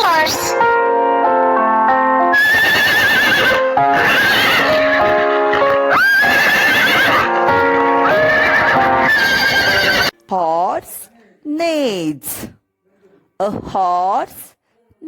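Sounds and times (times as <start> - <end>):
background music: 0.0 - 14.6
horse neighing: 2.3 - 10.1.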